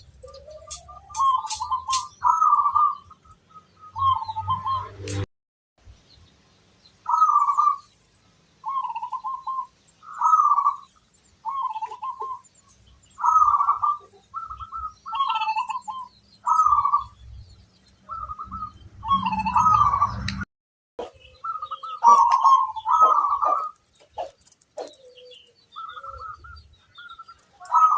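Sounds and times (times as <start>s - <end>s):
dove cooing: 0.0s - 3.1s, 8.6s - 12.4s, 13.2s - 17.2s, 21.0s - 27.9s.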